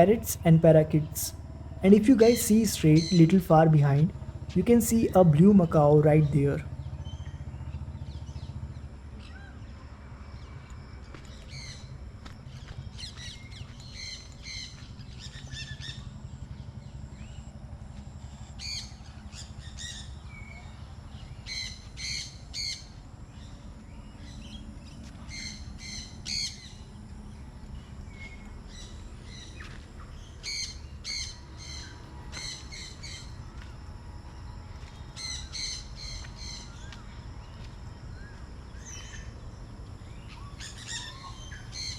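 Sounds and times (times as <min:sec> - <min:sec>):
steady low rumble: 0:00.0 - 0:09.3.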